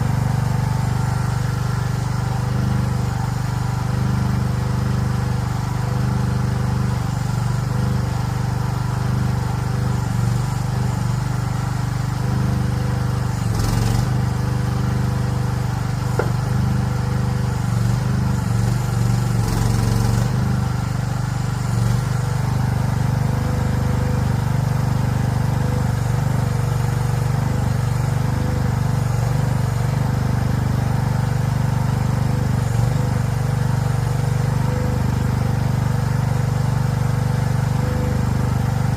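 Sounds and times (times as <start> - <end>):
excavator engine running: 0.0 - 38.9.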